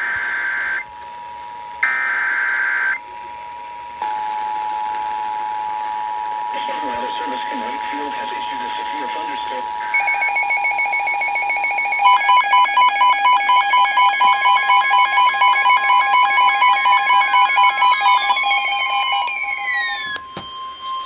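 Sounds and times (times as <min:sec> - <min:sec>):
two-tone attention signal: 0:09.9 - 0:21.0
fast shrill electronic beeping: 0:10.0 - 0:21.0
steady alert tone: 0:12.0 - 0:20.2
tones gliding downward: 0:12.1 - 0:21.0.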